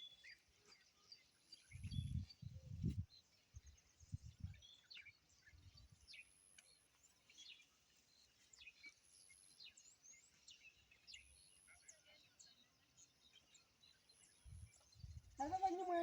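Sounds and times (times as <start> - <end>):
birds chirping: 0.0 - 16.0.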